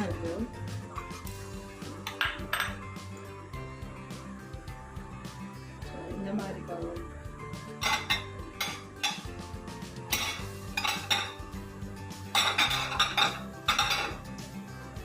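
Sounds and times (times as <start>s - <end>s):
background music: 0.0s - 15.0s
dishware clinking: 2.0s - 3.0s, 7.8s - 9.3s, 10.1s - 11.5s, 12.2s - 14.3s.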